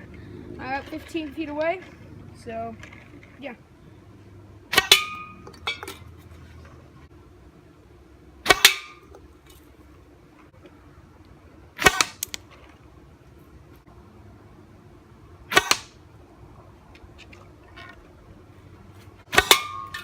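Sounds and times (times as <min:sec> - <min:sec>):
blowpipe dart shots: 0:04.7 - 0:05.4, 0:08.4 - 0:09.0, 0:11.8 - 0:12.4, 0:15.5 - 0:16.0, 0:19.3 - 0:20.0.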